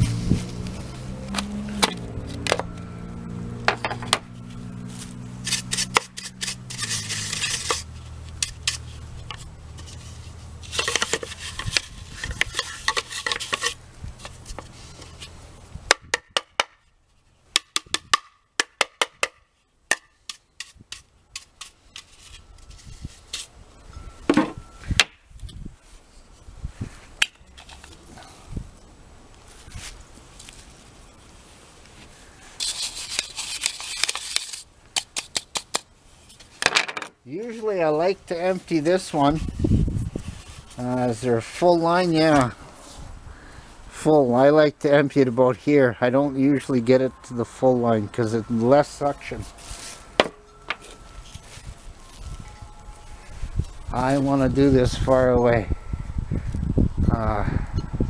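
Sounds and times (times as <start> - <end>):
brushing hiss: 4.3 - 15.7, 30.5 - 36.6.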